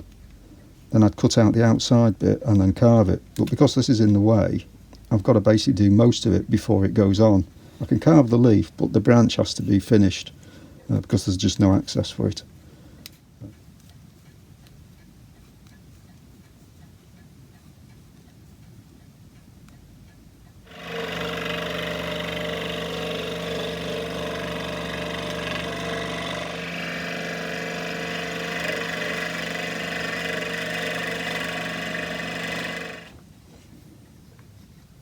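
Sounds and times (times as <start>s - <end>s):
rotary carving tool cutting wood: 20.6s - 33.2s.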